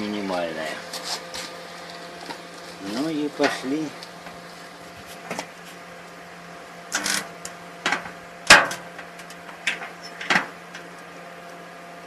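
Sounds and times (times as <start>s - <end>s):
steady low hum: 0.0s - 12.0s
spot welder cracks and clacks: 6.9s - 11.1s.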